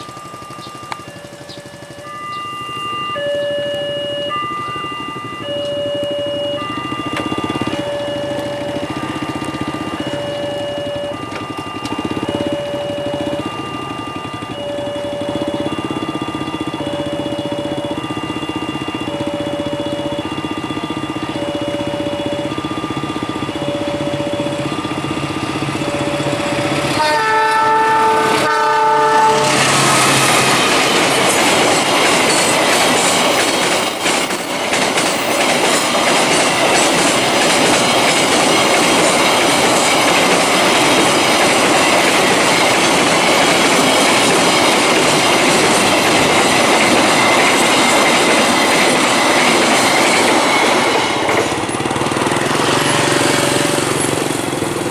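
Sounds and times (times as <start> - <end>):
crossing siren beeping via megaphone: 0.0 - 54.9
train wheels clattering over rails: 14.9 - 54.9
train horn chord: 23.6 - 30.6, 52.2 - 54.2.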